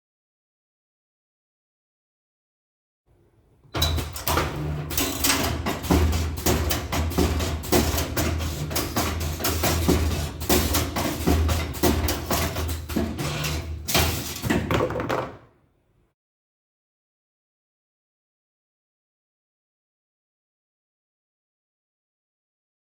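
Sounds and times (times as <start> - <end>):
wire-bending machine clicking: 3.6 - 14.8.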